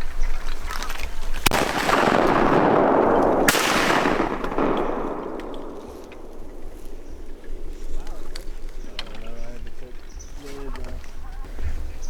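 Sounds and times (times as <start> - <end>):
shotgun shots: 1.5 - 9.1
rolling boom: 1.5 - 9.2.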